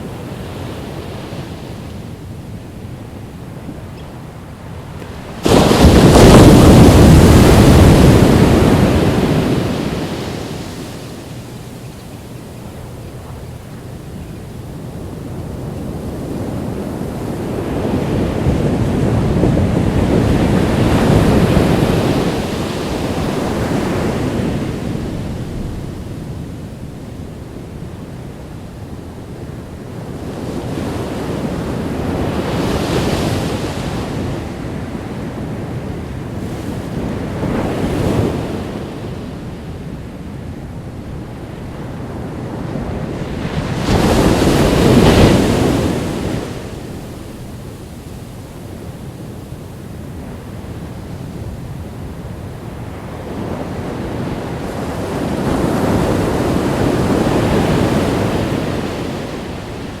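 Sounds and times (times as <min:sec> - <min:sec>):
ocean surf breaking: 0:03.2 - 0:26.6, 0:41.6 - 0:48.7, 0:50.5 - 1:00.0.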